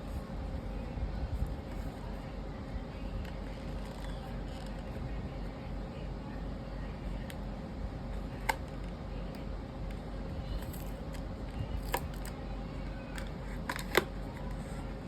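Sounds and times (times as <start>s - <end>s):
steady background hum: 0.0s - 15.0s.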